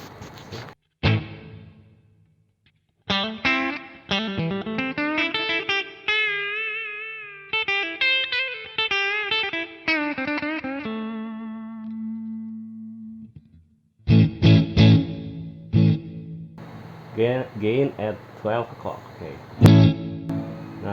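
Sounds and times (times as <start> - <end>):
electric guitar chords: 1.0 - 2.0, 3.1 - 20.9
electric guitar single-note lines: 3.1 - 16.9, 19.5 - 20.9.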